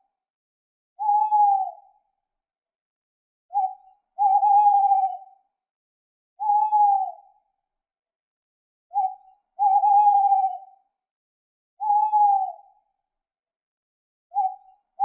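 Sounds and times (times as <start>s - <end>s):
owl hooting: 1.0s - 1.8s, 3.5s - 5.3s, 6.4s - 7.3s, 8.9s - 10.7s, 11.8s - 12.7s.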